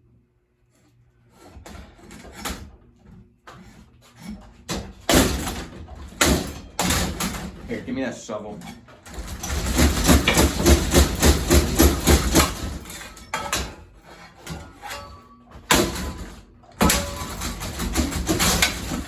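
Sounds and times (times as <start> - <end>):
metal rattling: 8.6 - 19.0
shovel striking metal fan: 8.6 - 19.0.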